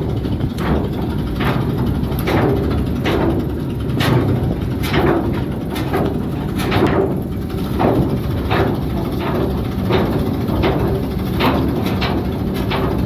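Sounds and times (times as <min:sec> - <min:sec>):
diesel engine rumble: 0:00.0 - 0:13.0.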